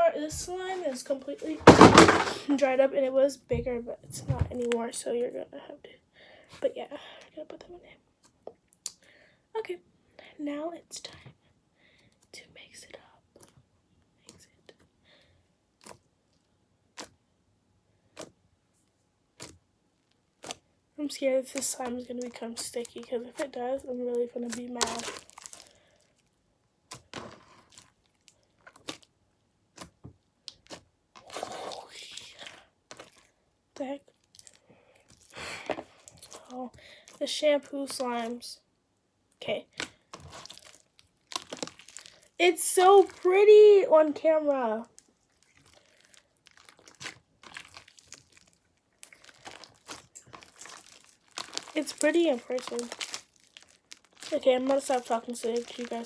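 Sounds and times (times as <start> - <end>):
slime squishing and crackling: 19.3 - 19.6, 21.4 - 29.1, 29.7 - 38.5, 39.7 - 56.0.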